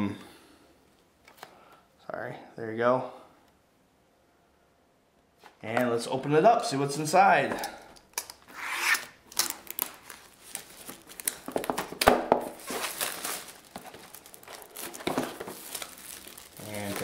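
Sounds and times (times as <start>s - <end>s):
plastic and cardboard crinkling: 9.2s - 17.0s.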